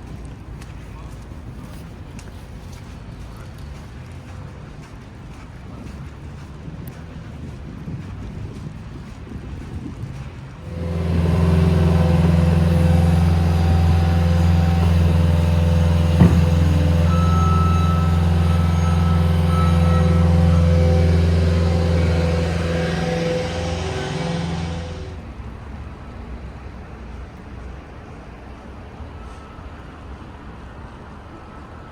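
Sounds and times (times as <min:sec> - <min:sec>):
vehicle engine running: 0:10.6 - 0:25.4.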